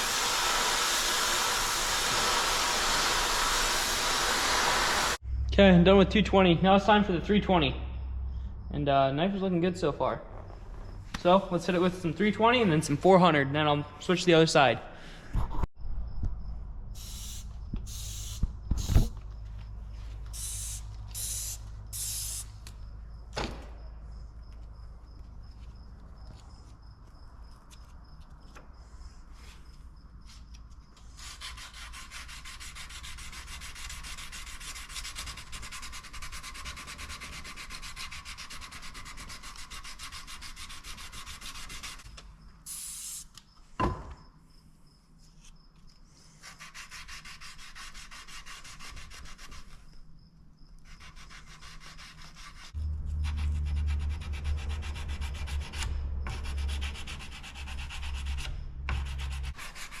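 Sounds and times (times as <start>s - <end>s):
loud low rumble: 5.2s - 9.6s, 52.8s - 59.5s
sandpaper rubbing on knife blade: 31.0s - 42.1s, 46.4s - 49.9s, 50.8s - 60.0s.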